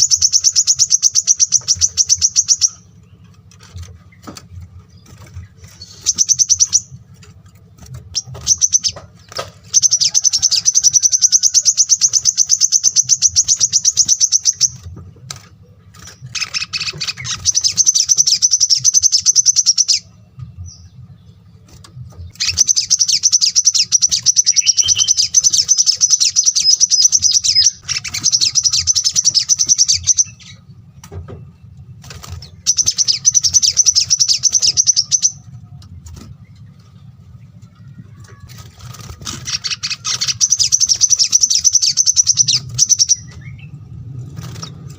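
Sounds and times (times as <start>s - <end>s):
songbird trilling: 0.0s - 3.4s, 5.1s - 7.3s, 8.1s - 14.9s, 16.0s - 20.1s, 22.3s - 30.7s, 32.2s - 35.5s, 37.8s - 43.8s
faint low hum: 0.0s - 44.9s.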